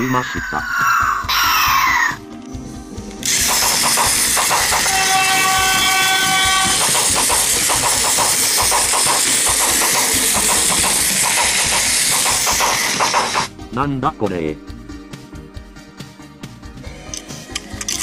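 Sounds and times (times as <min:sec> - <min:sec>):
train horn: 0:04.6 - 0:07.0.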